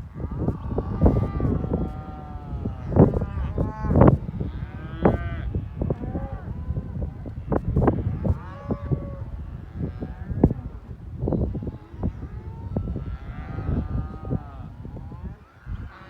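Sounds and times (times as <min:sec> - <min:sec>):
cattle mooing and bawling: 0:00.2 - 0:06.6.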